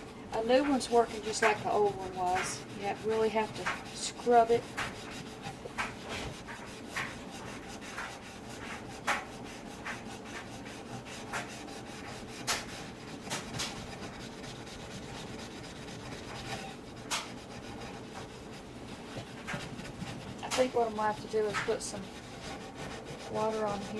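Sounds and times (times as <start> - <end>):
steel wool scrubbing glass: 0.0 - 23.9.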